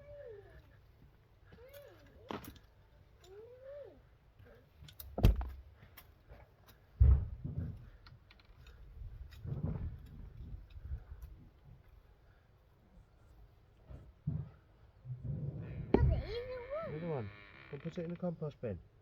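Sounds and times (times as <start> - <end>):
heavy thuds: 5.1 - 5.7, 7.0 - 8.0, 13.9 - 16.5.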